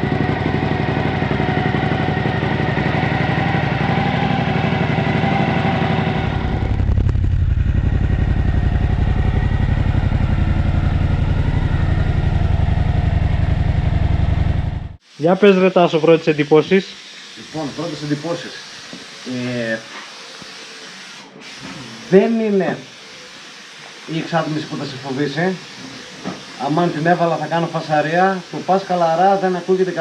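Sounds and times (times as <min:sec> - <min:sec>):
motorcycle engine idling: 0:00.0 - 0:15.0.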